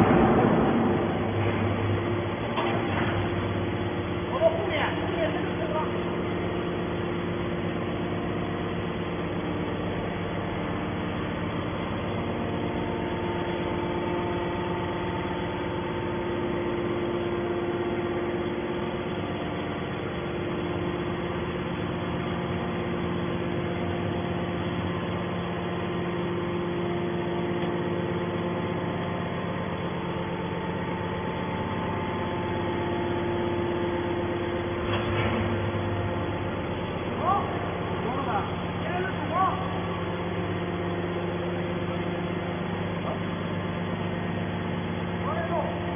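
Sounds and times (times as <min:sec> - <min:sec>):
loud machine noise: 0:00.0 - 0:16.6
machine hum with held tones: 0:00.0 - 0:45.9.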